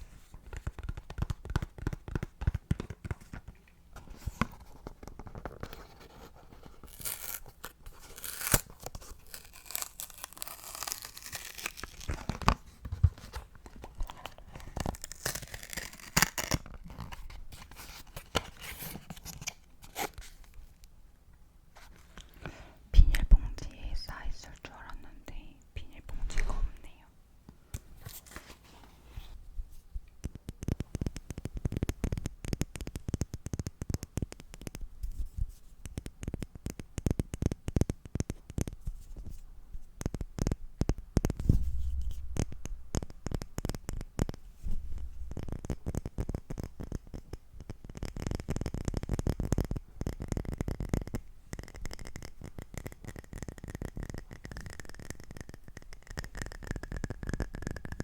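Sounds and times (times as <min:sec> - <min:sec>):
fingertip tapping and scratching: 0:30.2 - 0:39.0, 0:45.3 - 0:58.0.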